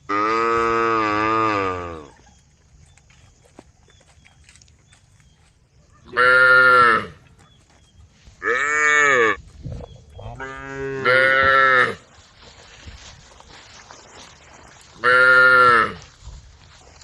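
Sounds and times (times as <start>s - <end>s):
cows mooing: 0.1s - 2.1s, 6.1s - 7.2s, 8.4s - 9.4s, 10.2s - 12.0s.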